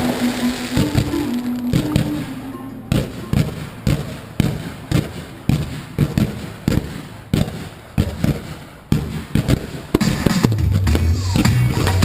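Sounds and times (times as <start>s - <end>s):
music: 0.0s - 4.2s, 10.0s - 12.0s
fireworks booming: 0.0s - 12.0s
fireworks crackle: 0.0s - 12.0s.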